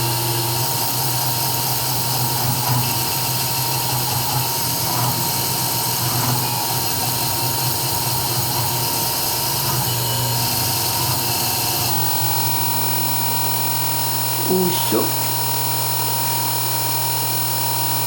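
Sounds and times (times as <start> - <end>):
router spindle whine: 11.8 - 18.0.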